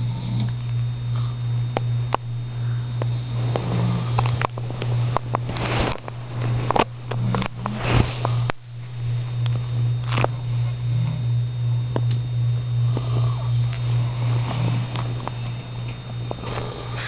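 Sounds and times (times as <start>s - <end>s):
steady low hum: 0.0s - 17.0s
person snoring: 1.1s - 1.6s, 2.5s - 4.4s, 12.8s - 15.2s, 16.2s - 17.0s.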